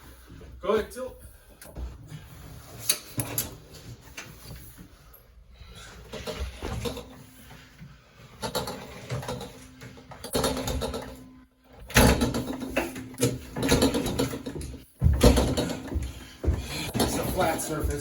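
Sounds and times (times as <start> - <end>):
dolly clunking on stairs: 6.0 - 7.7, 8.3 - 18.0.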